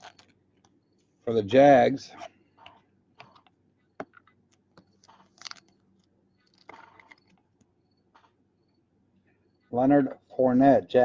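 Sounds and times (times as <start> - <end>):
cards clicking and rustling: 0.0 - 0.8, 2.6 - 8.3.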